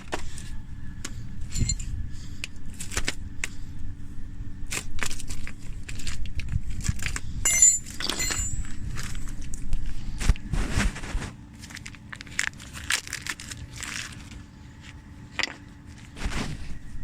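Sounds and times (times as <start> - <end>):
steady low rumble: 0.0 - 17.0
tools and metal parts clicking: 1.4 - 3.5, 4.7 - 9.7.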